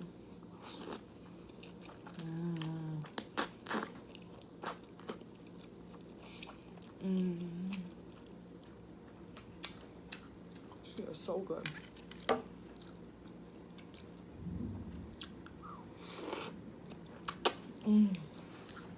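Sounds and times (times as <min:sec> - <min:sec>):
person chewing noodles: 0:00.6 - 0:10.8, 0:11.8 - 0:14.3
person humming mm: 0:02.1 - 0:03.1, 0:07.0 - 0:07.9, 0:17.8 - 0:18.4.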